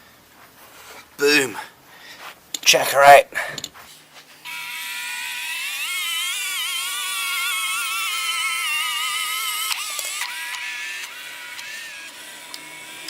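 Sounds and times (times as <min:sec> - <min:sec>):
electric motors whining: 0:03.9 - 0:13.0
clicks: 0:09.5 - 0:12.7.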